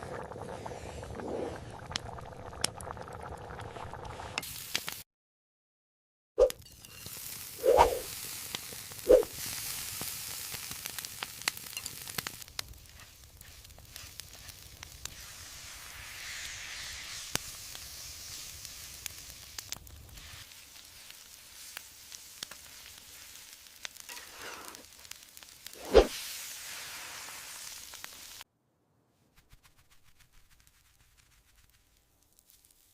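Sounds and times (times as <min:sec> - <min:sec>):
food sizzling in a pan: 0:03.7 - 0:05.0, 0:06.5 - 0:28.4, 0:30.0 - 0:32.9.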